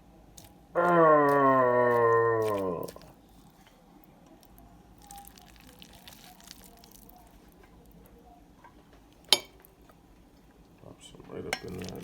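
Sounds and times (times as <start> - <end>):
serving utensil clinking on dish: 9.3 - 9.6.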